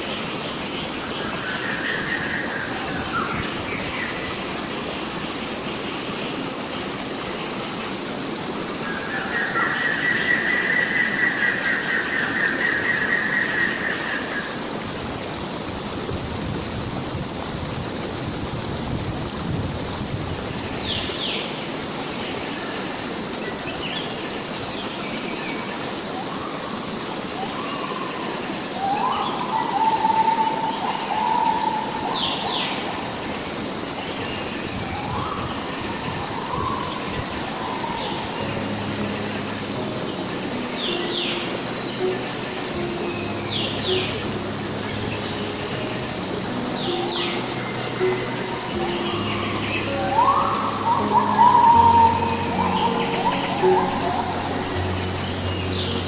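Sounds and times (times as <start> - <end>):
birds singing: 0.0 - 18.6, 19.4 - 56.0
rapid pulsed bird song: 0.0 - 18.6, 19.9 - 56.0
stream water running: 0.0 - 56.0
lower-pitched bird call: 27.3 - 33.1, 34.4 - 39.6, 40.3 - 56.0.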